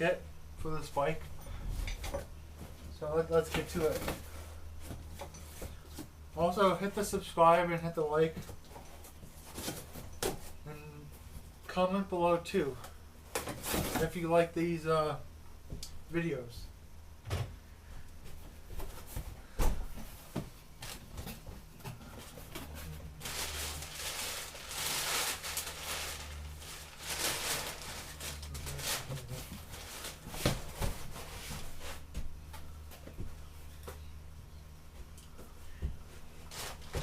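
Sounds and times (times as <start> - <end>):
low steady hum: 0.0 - 37.0
packaging rustling: 22.8 - 31.6.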